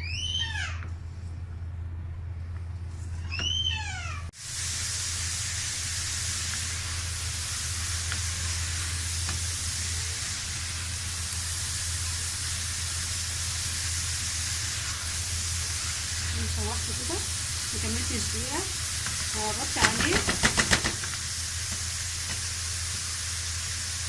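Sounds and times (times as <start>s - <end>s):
vegetables sizzling in a pan: 4.4s - 24.0s.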